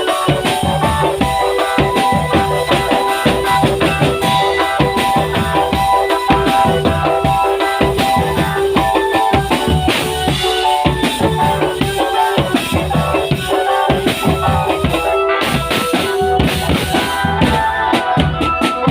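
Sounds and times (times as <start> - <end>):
fast dense drumming: 0.0 - 18.9
loud music: 0.0 - 18.9
melody of held notes: 0.0 - 18.9.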